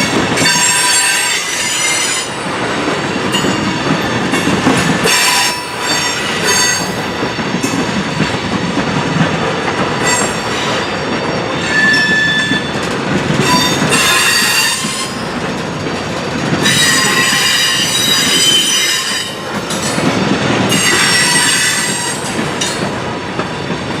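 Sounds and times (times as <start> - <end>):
train wheels rumbling on rails: 0.0 - 24.0
high wheel squeal: 11.5 - 12.8, 13.4 - 15.3, 16.6 - 19.4, 20.7 - 22.3.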